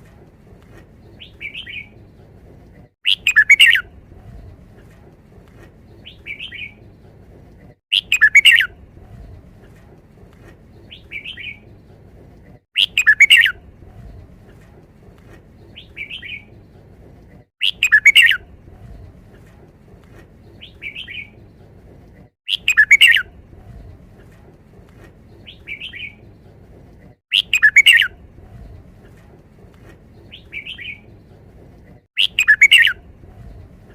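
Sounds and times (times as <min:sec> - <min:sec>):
bird singing song phrase: 0:32.2 - 0:33.0.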